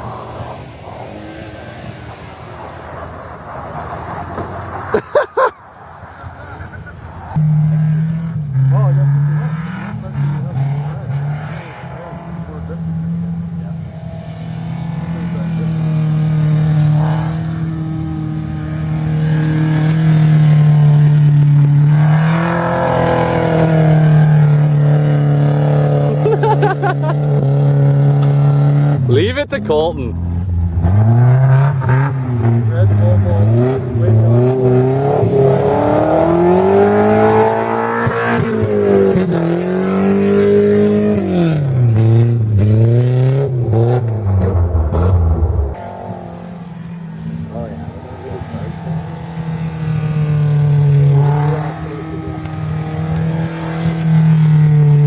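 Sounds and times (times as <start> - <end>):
car engine at high revs: 0.0 - 55.0.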